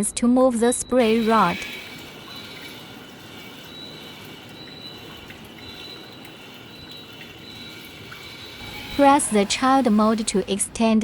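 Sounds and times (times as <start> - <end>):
bidet spraying water: 1.0 - 10.8.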